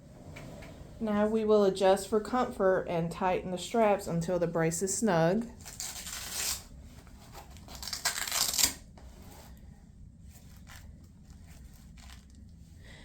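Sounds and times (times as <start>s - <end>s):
velcro straps ripping: 5.6s - 6.7s, 7.3s - 8.8s, 10.5s - 12.4s.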